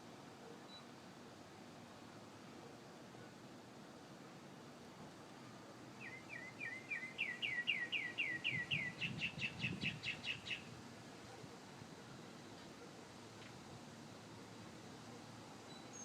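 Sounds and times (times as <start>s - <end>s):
songbird singing: 5.8s - 11.5s, 14.0s - 16.0s.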